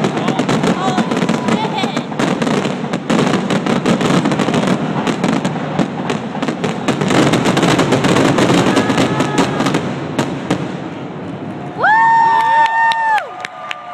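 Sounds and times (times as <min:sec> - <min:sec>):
fireworks bangs and crackles: 0:00.0 - 0:13.8.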